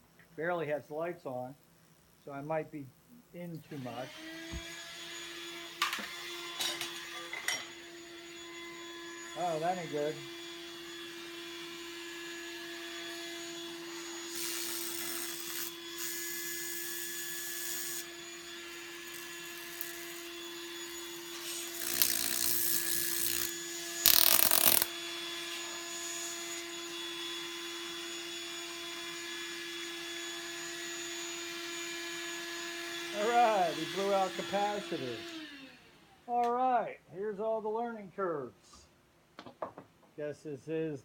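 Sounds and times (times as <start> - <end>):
spark gap buzzing bursts: 12.8 - 26.8.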